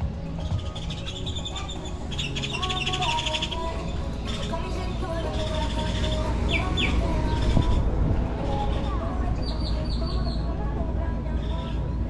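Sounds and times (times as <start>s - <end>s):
background music: 0.0s - 12.0s
birds chirping in rapid trills: 0.2s - 7.9s, 8.6s - 10.5s, 11.3s - 12.0s.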